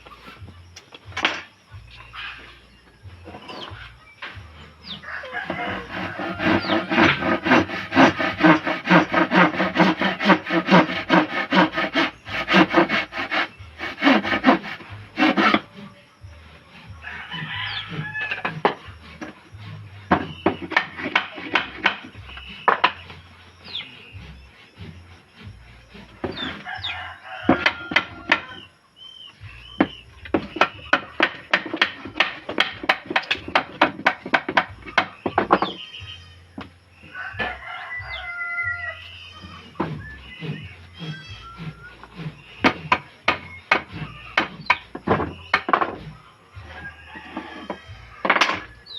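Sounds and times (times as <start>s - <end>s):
rasping scrape on wood: 5.4s - 28.6s, 29.8s - 35.8s, 39.1s - 48.9s
sharp knocks and taps: 20.1s - 22.1s, 29.8s - 35.8s.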